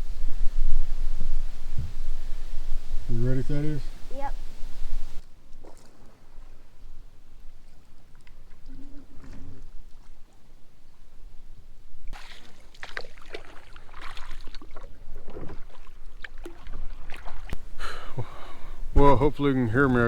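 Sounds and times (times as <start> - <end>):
microphone crackling: 0.0 - 5.2
boat engine rumble: 0.0 - 12.4, 13.8 - 20.0
water splashing: 12.1 - 17.6.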